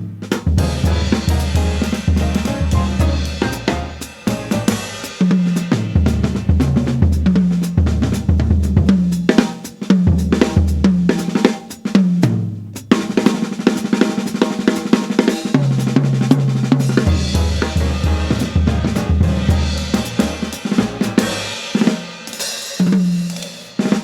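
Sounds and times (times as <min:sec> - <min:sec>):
acoustic drum kit: 0:00.0 - 0:24.0
jazz trio playing: 0:00.2 - 0:08.8, 0:16.4 - 0:22.0
double bass line: 0:00.5 - 0:04.9, 0:17.1 - 0:21.2.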